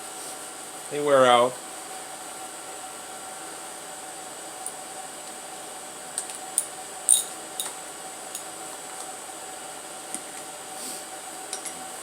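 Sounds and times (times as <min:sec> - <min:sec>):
steady background hiss: 0:00.0 - 0:12.0
metal hand tools clinking: 0:07.1 - 0:07.7.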